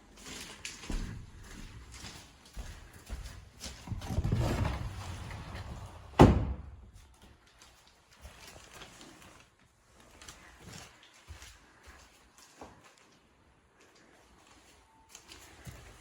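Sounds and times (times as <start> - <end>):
door rolling: 3.9 - 6.9
door shutting with a knock: 6.1 - 6.8.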